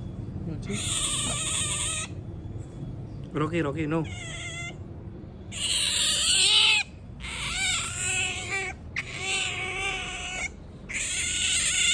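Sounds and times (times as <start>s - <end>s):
otter squealing: 0.6s - 2.2s, 3.9s - 4.8s, 5.5s - 11.9s.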